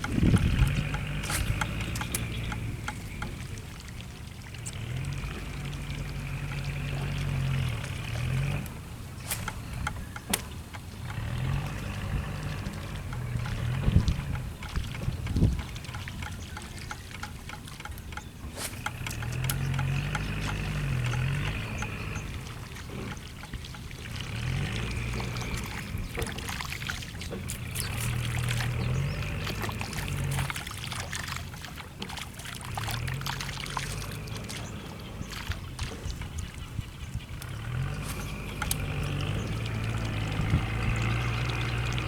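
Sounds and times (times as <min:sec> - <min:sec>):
low hum shifting in pitch: 0:00.0 - 0:16.9, 0:17.9 - 0:42.0
water pouring and trickling: 0:00.0 - 0:42.0
sharp clicks: 0:14.3 - 0:22.0.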